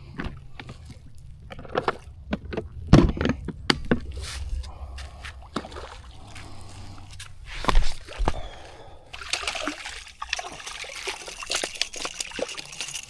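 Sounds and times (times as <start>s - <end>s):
steady low rumble: 0.0s - 9.2s
water splashing around a fish: 9.2s - 13.0s.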